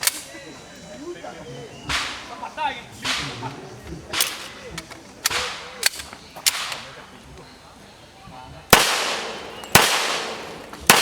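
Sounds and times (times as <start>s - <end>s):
handgun shots: 5.2s - 6.9s, 8.8s - 11.0s.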